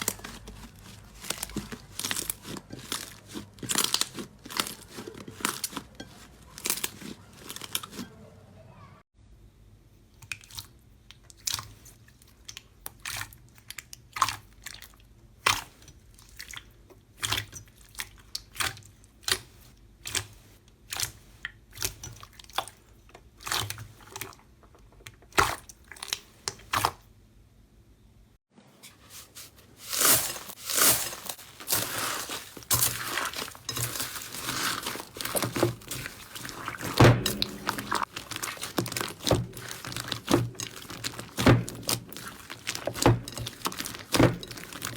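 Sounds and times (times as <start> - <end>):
slime popping and crunching: 0.0 - 8.0, 29.9 - 44.9.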